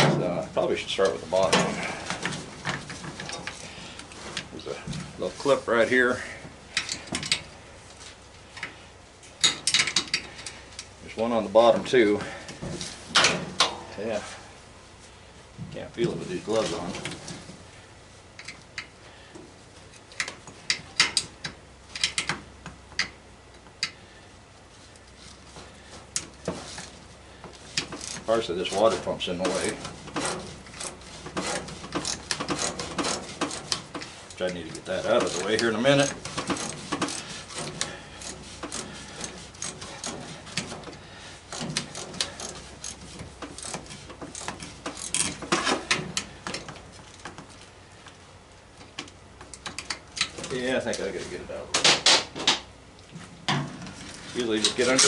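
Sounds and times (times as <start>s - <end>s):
tools clicking and tapping on parts: 1.0s - 5.1s, 6.4s - 7.6s, 8.6s - 11.0s, 18.4s - 24.0s, 24.9s - 51.1s.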